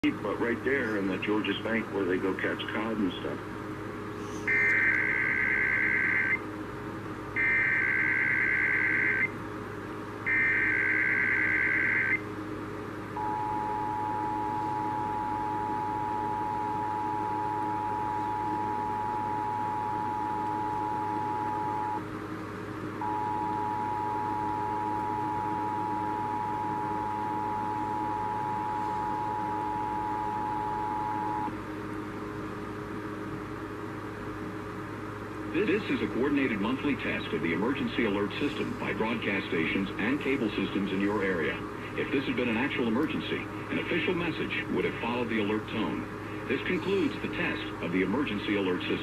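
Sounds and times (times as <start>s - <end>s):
digital data bursts: 4.5s - 6.4s, 7.4s - 9.3s, 10.3s - 12.2s
two-tone attention signal: 7.4s - 9.3s, 13.2s - 22.0s, 23.0s - 31.5s.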